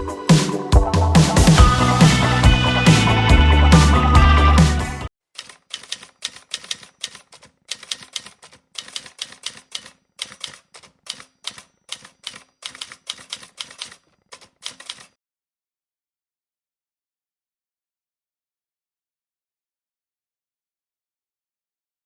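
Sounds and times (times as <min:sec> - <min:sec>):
keyboard typing clicks: 0:05.4 - 0:15.2.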